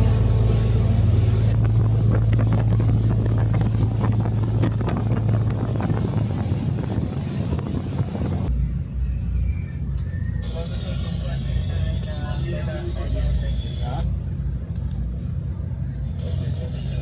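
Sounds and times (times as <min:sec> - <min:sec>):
background music: 0:00.0 - 0:01.6
wind buffeting microphone: 0:00.0 - 0:10.6
ferry engine droning: 0:00.0 - 0:17.0.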